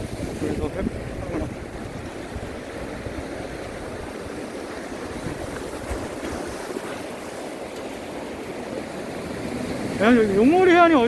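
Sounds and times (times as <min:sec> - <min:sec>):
wind gusting on microphone: 0:00.0 - 0:07.6
surf washing against rocks: 0:00.0 - 0:11.0.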